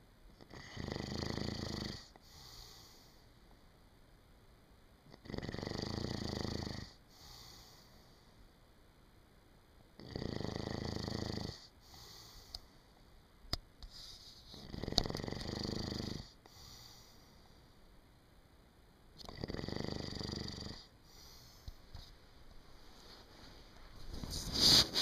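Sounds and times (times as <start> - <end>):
man snoring: 0.4 - 2.9, 5.1 - 7.7, 10.0 - 12.3, 14.6 - 16.9, 19.3 - 21.4
soft breaths: 2.0 - 3.7, 6.9 - 8.5, 11.5 - 13.1, 13.8 - 17.9, 20.7 - 25.0.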